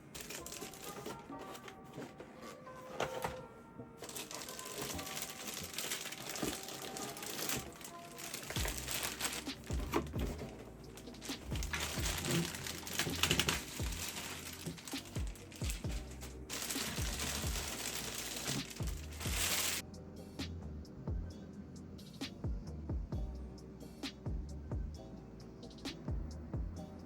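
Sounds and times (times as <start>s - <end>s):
plastic packaging crinkling: 0.0s - 19.8s
music with bass beat: 8.6s - 14.1s, 14.9s - 18.0s, 18.7s - 27.0s.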